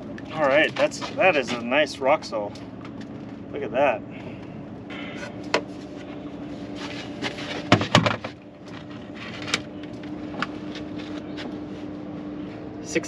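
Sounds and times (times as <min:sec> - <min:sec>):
steady low hum: 0:00.0 - 0:13.0
knocks and clatters in boat: 0:07.3 - 0:09.6.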